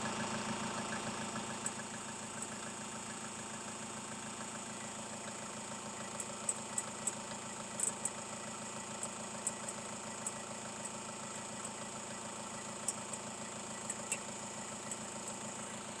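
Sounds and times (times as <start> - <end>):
sharp ticks from alternator: 0.0 - 16.0
van engine idling: 0.0 - 16.0.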